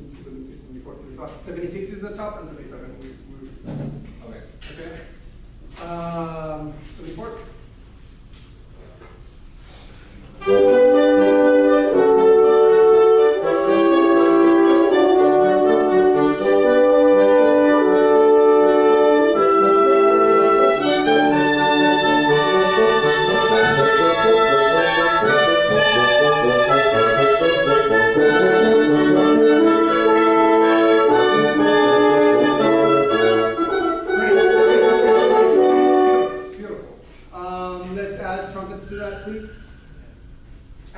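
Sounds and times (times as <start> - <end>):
woodwinds and french horns playing: 10.4 - 36.6.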